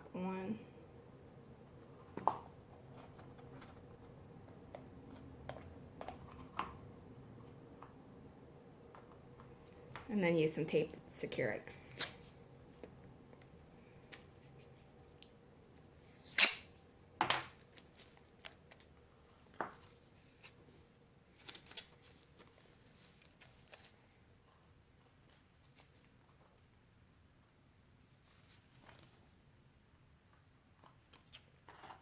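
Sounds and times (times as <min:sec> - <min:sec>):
tape ripping: 0:11.7 - 0:12.4, 0:16.0 - 0:16.7, 0:21.4 - 0:24.0.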